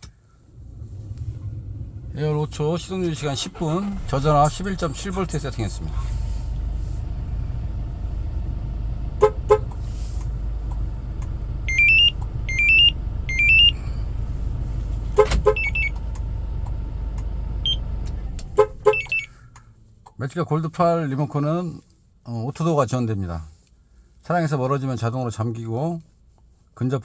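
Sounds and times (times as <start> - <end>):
truck engine idling: 0.0 - 19.9
short horn chirps: 9.2 - 10.3
rising electronic beeps: 11.6 - 13.8.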